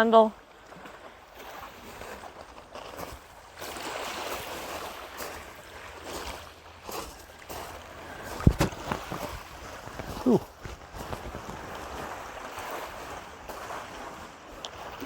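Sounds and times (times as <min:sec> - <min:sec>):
waves lapping on rocky shore: 0:00.0 - 0:15.0
wind buffeting microphone: 0:07.9 - 0:14.9.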